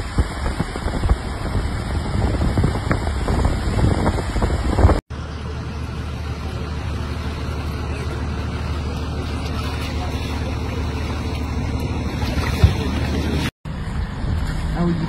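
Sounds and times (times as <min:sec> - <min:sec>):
wind rumble on microphone: 0:00.0 - 0:05.0
floodwater rushing: 0:00.0 - 0:13.5.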